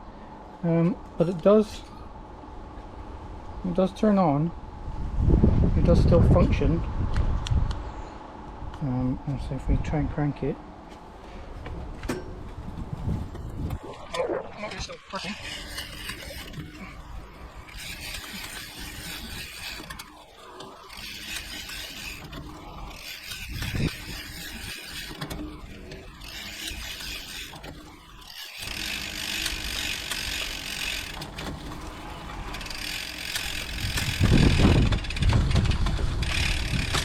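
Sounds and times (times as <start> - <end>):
gears shifting: 10.9 - 37.0
bike chain over sprockets: 13.5 - 37.0
freehub ratcheting: 15.1 - 37.0.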